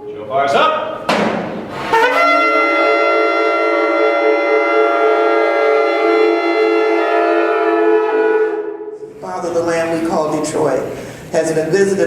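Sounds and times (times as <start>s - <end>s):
ram's horn blast: 1.7s - 9.1s.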